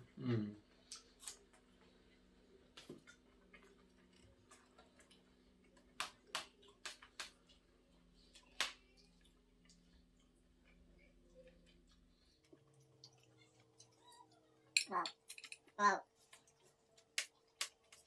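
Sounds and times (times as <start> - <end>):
faint steady hum: 0.0 - 18.0
cutlery clicking on plates: 14.8 - 15.6.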